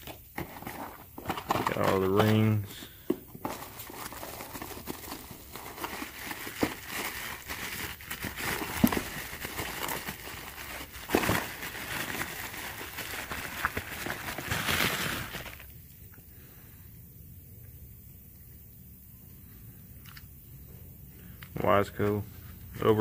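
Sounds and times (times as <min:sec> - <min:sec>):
packaging crinkling and rustling: 0:00.0 - 0:15.8.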